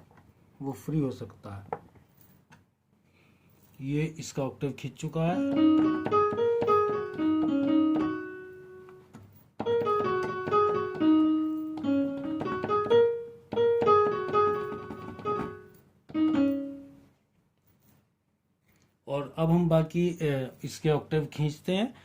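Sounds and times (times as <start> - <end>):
piano melody: 5.2 - 17.1.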